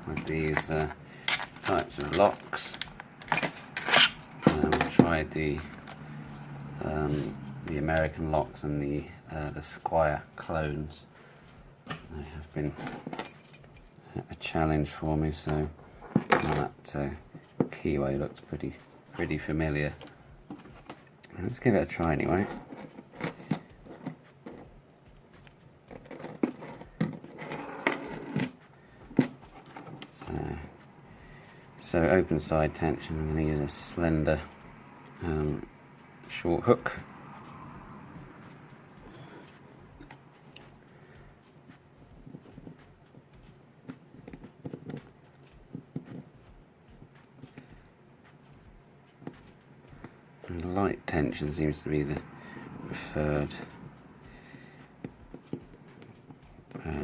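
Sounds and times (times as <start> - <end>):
tool handling noise: 0.0 - 8.2, 11.8 - 14.0, 14.9 - 24.8, 25.4 - 34.6.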